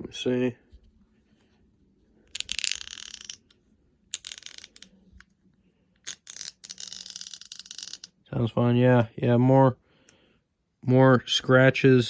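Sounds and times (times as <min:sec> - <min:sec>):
ratchet wrench clicking: 0:02.3 - 0:03.5, 0:04.1 - 0:04.9, 0:06.0 - 0:08.1.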